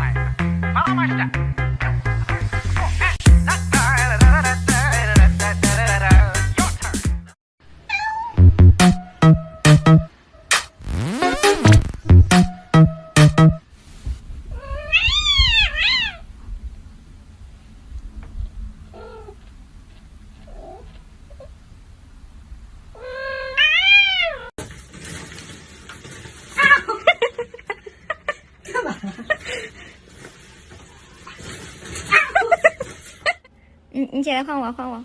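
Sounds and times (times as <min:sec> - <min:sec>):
cat yowling: 0:07.9 - 0:08.4, 0:14.6 - 0:16.3, 0:23.0 - 0:24.5.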